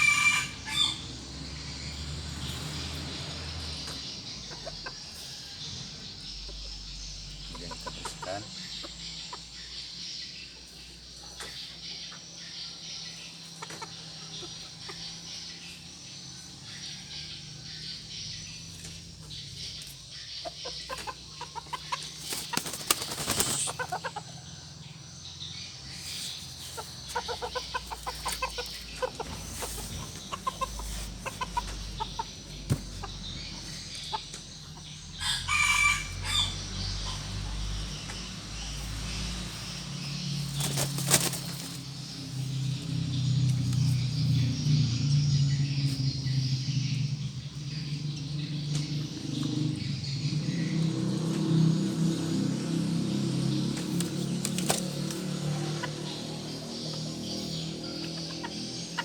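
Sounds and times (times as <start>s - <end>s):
chicken clucking and calling: 0.0s - 1.4s, 3.0s - 41.8s
wing flapping: 21.9s - 24.1s, 40.3s - 42.1s, 53.8s - 55.9s.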